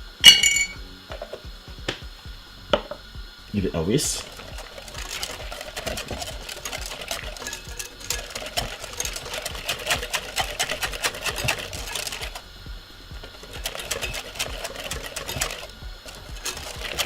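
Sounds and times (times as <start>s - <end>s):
whisk clicking and scraping: 3.6s - 17.0s.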